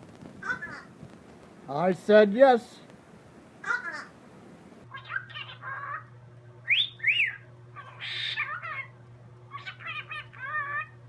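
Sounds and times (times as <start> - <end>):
parrot squawk: 0.4 - 0.9, 3.6 - 4.2, 4.9 - 6.1, 6.7 - 11.0
parrot chirping and whistling: 4.9 - 11.0.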